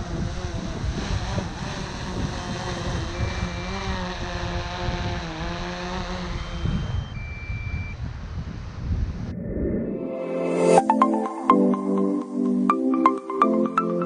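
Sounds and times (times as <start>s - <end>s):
steady wavering hum: 0.0s - 7.7s
wind buffeting microphone: 0.0s - 10.0s
two-tone electronic beep: 3.2s - 3.7s, 6.4s - 8.0s.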